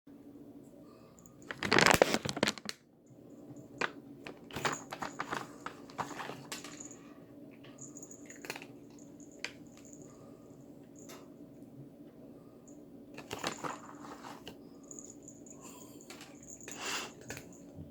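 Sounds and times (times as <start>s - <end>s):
package crinkling and crackling: 1.4s - 2.8s, 3.8s - 6.9s, 13.2s - 14.3s
scattered clicks and rattles: 3.8s - 7.0s.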